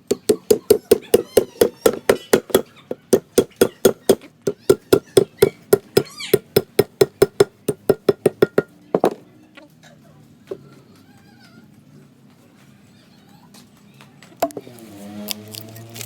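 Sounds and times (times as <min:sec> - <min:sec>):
rapid hammer blows: 0:00.0 - 0:08.7.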